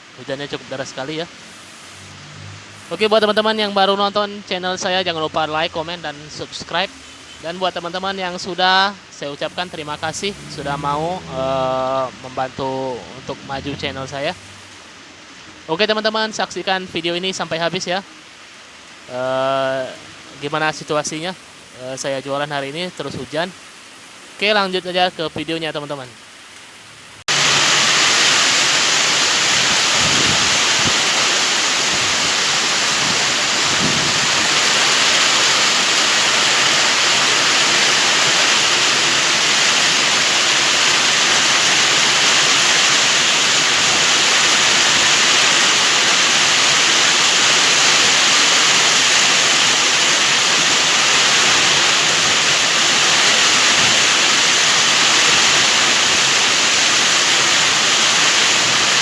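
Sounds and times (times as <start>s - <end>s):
heavy rain pouring: 0.0s - 59.0s.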